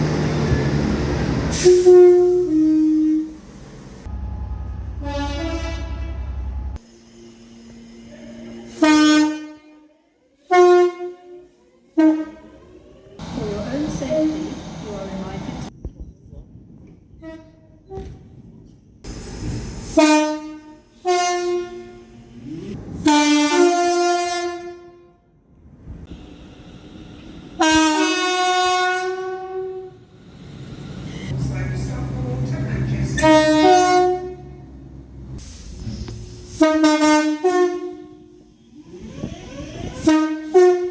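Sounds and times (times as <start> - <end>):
train rumble: 0.0 - 6.9, 12.0 - 24.5, 25.4 - 40.9
train two-tone horn: 1.5 - 3.4, 4.1 - 12.6, 17.2 - 18.1, 19.8 - 25.3, 27.6 - 30.0, 33.1 - 34.7, 36.5 - 40.9.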